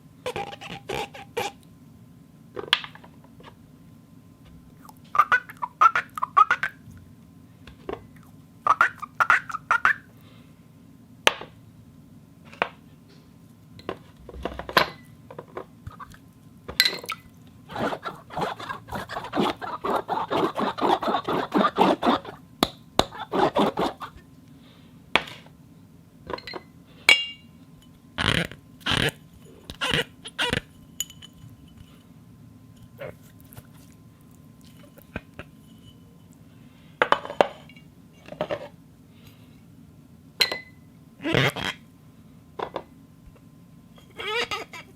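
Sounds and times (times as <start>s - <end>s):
squeaky strokes on glass: 0.3s - 1.6s, 17.7s - 22.4s, 28.2s - 30.7s, 41.2s - 41.8s, 44.0s - 44.9s
glass clinking: 16.8s - 17.1s, 26.3s - 27.5s, 31.0s - 32.0s, 37.2s - 37.9s, 40.4s - 40.8s.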